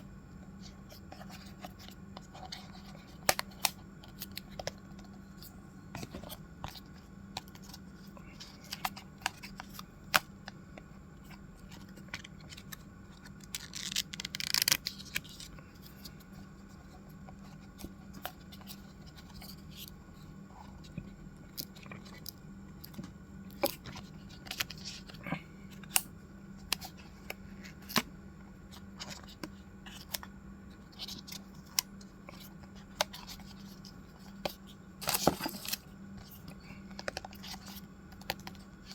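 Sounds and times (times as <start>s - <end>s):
packaging tearing: 13.5s - 15.2s.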